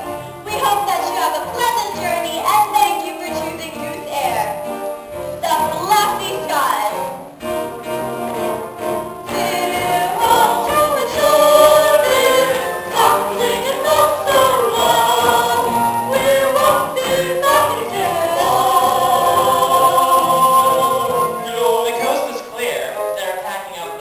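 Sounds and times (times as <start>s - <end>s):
chorus singing with accompaniment: 6.9s - 23.0s.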